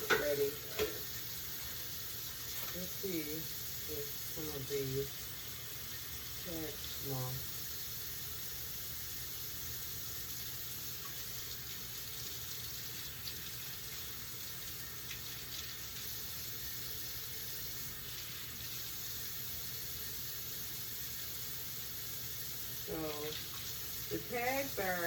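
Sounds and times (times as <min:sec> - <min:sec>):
faucet running into sink: 0:00.0 - 0:25.0.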